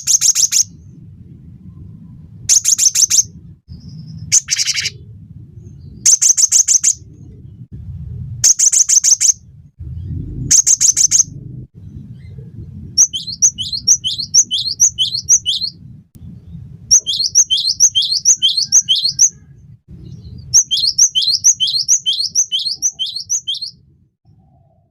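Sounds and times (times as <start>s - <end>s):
bird trills: 0.0s - 0.7s, 2.5s - 5.0s, 10.3s - 11.4s, 13.0s - 15.8s, 16.9s - 19.5s, 20.1s - 23.8s
low steady hum: 0.7s - 6.2s, 6.9s - 21.5s
bird whistled notes: 13.0s - 15.8s, 16.9s - 19.5s, 20.1s - 23.8s.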